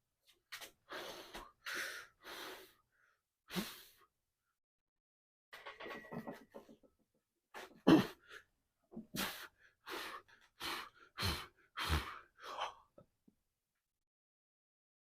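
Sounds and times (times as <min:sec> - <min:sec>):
man breathing heavily with gasps: 0:00.8 - 0:04.1, 0:07.6 - 0:13.0.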